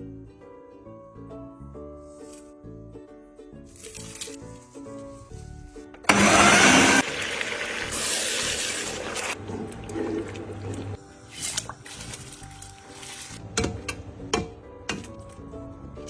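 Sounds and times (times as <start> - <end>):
background music: 0.0 - 16.0
mixer grinder motor whirring: 6.0 - 7.8.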